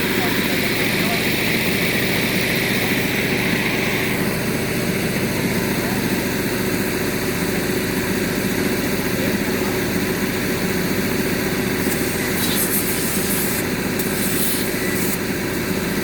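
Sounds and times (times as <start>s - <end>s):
machine droning: 0.0s - 16.0s
short bursts of hissing: 11.7s - 15.2s.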